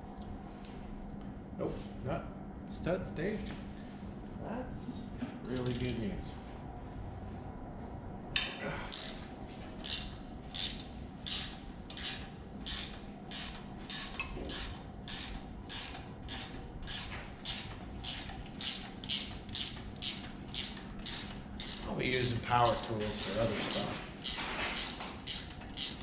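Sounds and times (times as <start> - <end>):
ratchet wrench clicking: 5.6 - 6.0, 8.4 - 26.0.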